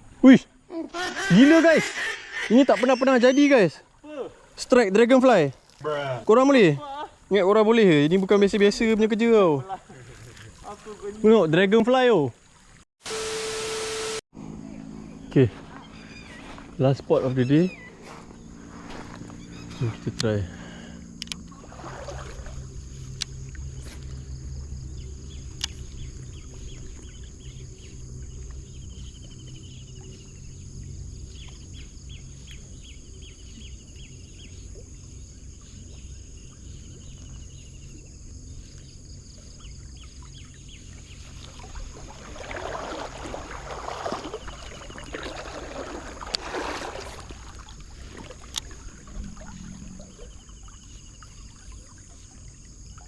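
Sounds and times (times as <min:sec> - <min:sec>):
flowing water: 0:03.5 - 0:14.1, 0:21.2 - 0:24.8, 0:39.2 - 0:53.0
water rushing and splashing: 0:07.3 - 0:14.2, 0:21.4 - 0:23.6, 0:40.1 - 0:53.0.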